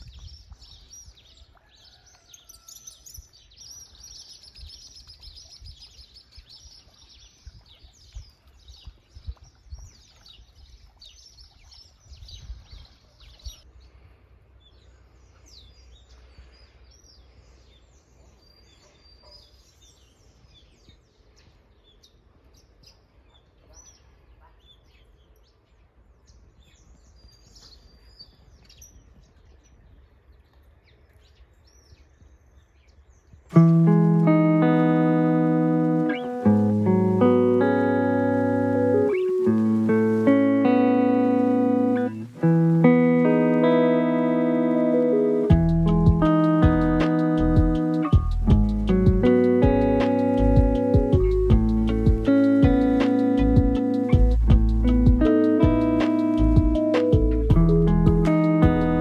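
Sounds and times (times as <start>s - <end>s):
birds chirping and calling: 33.6s - 59.0s
low rumble: 45.5s - 59.0s.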